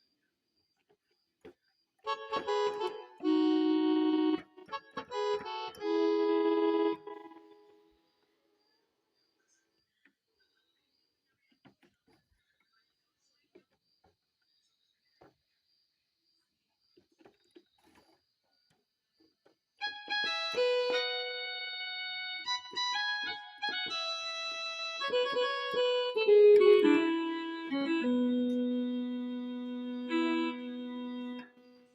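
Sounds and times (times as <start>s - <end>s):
keyboard playing piano melody: 2.0s - 7.9s, 19.8s - 31.9s.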